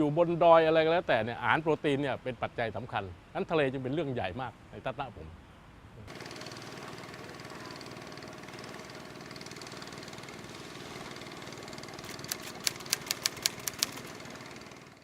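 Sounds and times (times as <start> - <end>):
engine running: 6.1 - 15.0
sharp clicks: 12.0 - 14.2.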